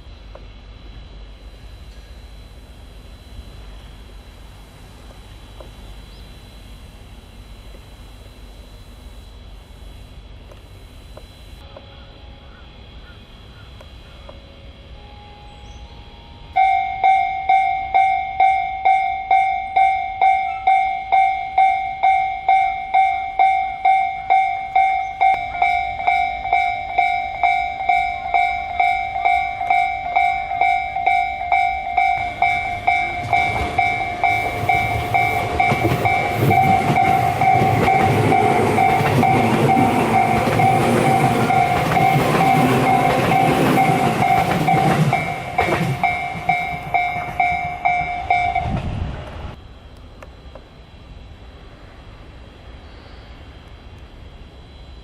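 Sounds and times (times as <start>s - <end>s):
train rumbling past: 0.0s - 10.9s, 11.6s - 55.0s
level crossing electronic bell: 16.5s - 48.7s
train wheels clicking over rail joints: 21.1s - 49.5s.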